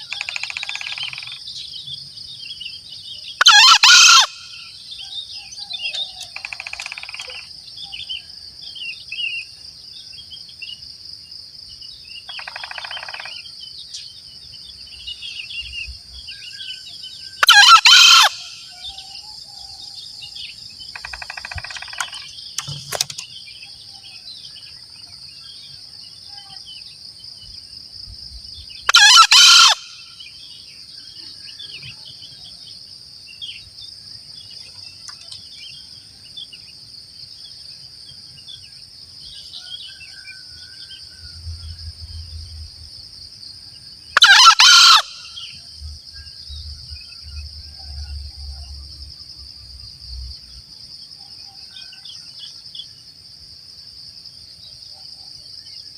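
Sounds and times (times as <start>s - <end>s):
junglefowl crowing: 3.4s - 4.7s, 17.4s - 19.0s, 28.9s - 30.0s, 44.2s - 45.5s
high-pitched insect drone: 16.6s - 22.8s, 44.4s - 50.6s.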